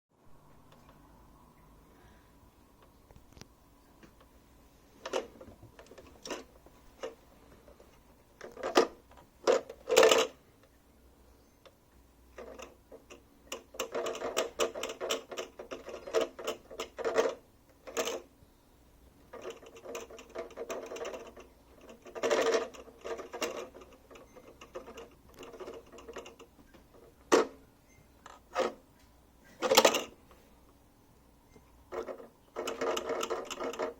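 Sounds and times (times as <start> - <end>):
fan heater rattling: 4.9 - 10.7, 11.7 - 30.5, 31.6 - 33.9.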